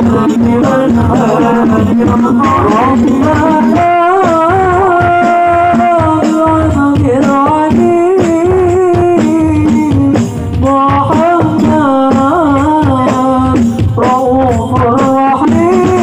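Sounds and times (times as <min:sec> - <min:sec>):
high voice singing devotional song: 0:00.0 - 0:16.0.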